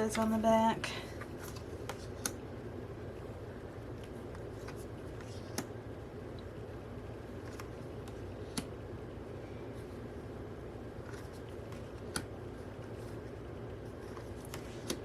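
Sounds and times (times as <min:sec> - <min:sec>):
low room hum: 0:00.0 - 0:15.0
photo cards clicking: 0:04.0 - 0:05.7, 0:07.4 - 0:08.7, 0:11.0 - 0:12.3, 0:14.0 - 0:15.0.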